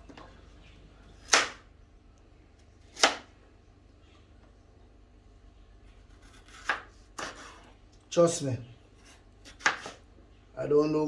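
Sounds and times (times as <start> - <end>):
knife cutting carrot: 5.9 - 7.7, 9.0 - 10.0.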